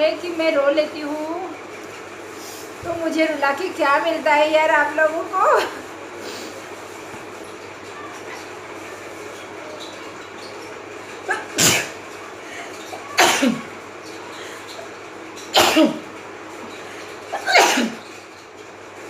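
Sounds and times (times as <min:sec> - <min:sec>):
woman sneezing: 0:17.4 - 0:18.0.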